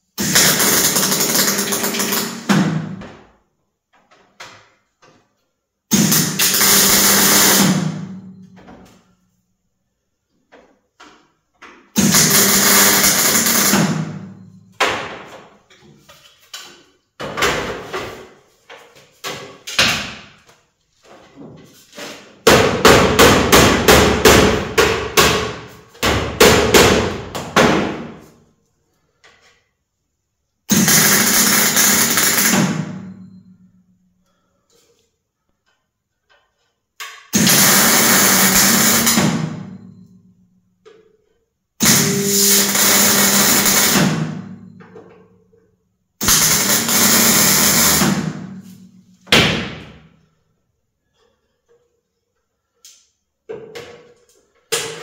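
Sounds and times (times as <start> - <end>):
hammer striking sheet metal: 22.4 - 28.3, 37.3 - 40.1, 41.8 - 44.8, 46.2 - 50.1
loud noisy bursts: 37.4 - 39.3, 46.2 - 48.2.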